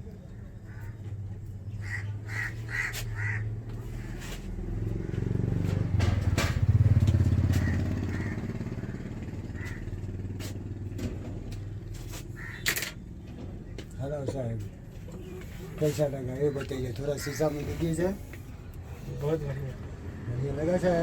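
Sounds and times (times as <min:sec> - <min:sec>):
vehicle engine passing by: 0:03.2 - 0:12.5.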